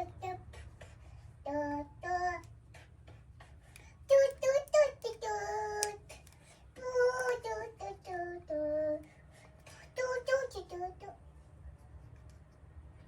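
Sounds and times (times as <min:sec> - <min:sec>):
child singing: 0:00.0 - 0:00.8, 0:01.4 - 0:02.5, 0:04.1 - 0:09.1, 0:09.7 - 0:11.2.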